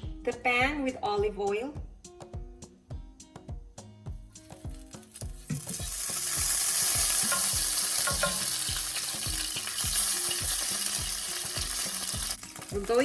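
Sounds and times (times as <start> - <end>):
chicken sizzling in a hot pan: 5.0 - 13.0.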